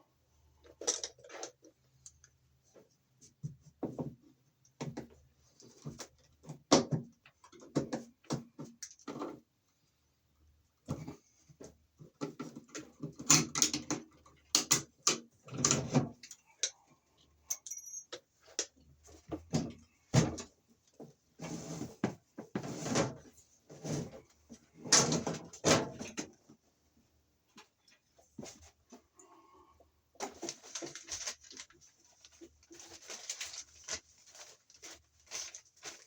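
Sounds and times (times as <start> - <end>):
wires rustling and scraping: 15.5 - 26.6, 30.2 - 36.0.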